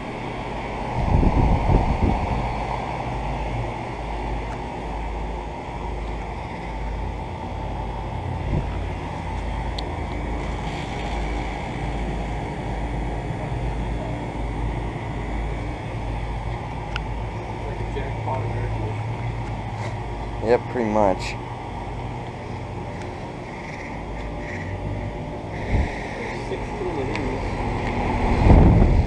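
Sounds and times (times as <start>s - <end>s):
air conditioner units humming: 0.0s - 29.0s
wind buffeting microphone: 0.6s - 4.4s, 8.0s - 13.1s, 21.9s - 29.0s.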